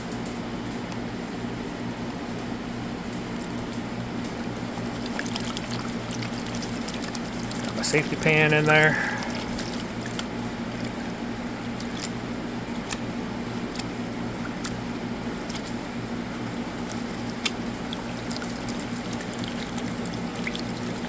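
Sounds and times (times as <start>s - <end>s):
steady low hum: 0.0s - 21.0s
gravel clicking against a pan: 3.4s - 8.5s, 16.5s - 21.0s
water sloshing in a pan: 4.2s - 12.9s, 15.2s - 21.0s.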